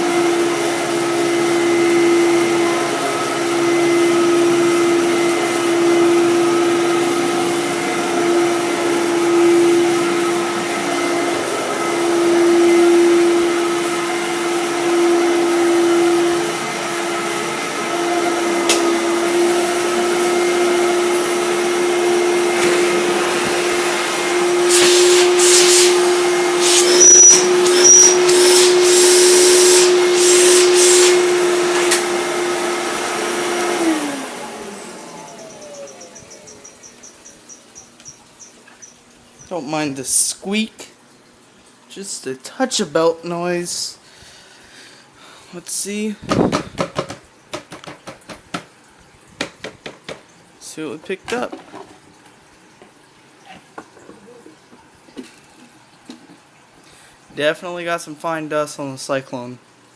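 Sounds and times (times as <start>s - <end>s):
vacuum cleaner motor whine: 0.0s - 37.1s
hissing and rattling: 24.6s - 32.0s
high belt squeak: 26.6s - 28.6s.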